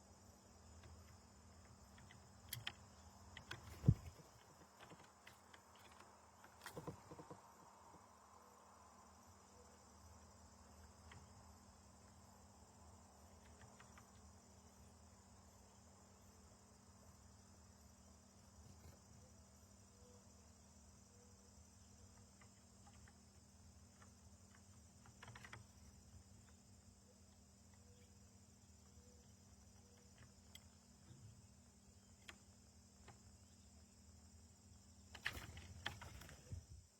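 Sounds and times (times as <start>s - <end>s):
crickets trilling: 0.0s - 36.9s
insect chorus: 0.0s - 36.9s
faint clicks: 0.8s - 7.5s, 13.3s - 14.4s, 29.7s - 31.4s.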